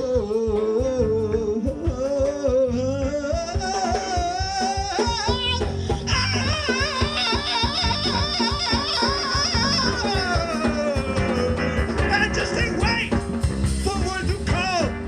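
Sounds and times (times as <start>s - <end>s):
person singing long wavering notes: 0.0s - 12.0s
steady drum beat: 0.0s - 15.0s.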